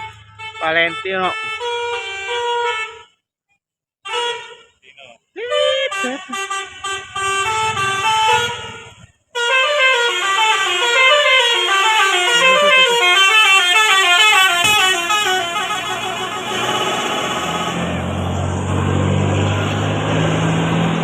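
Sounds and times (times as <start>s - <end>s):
multi-tone bus horn melody: 0.0s - 3.2s, 4.0s - 4.8s, 5.4s - 18.3s.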